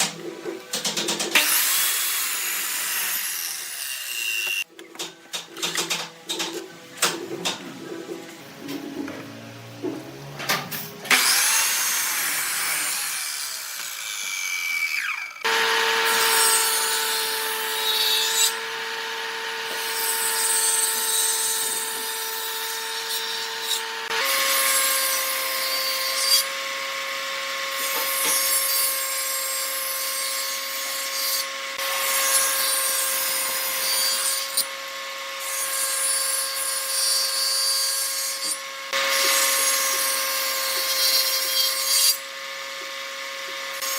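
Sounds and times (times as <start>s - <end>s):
wood lathe motor hum: 11.1s - 17.5s, 18.5s - 19.9s
tool cutting spinning wood: 11.1s - 25.5s.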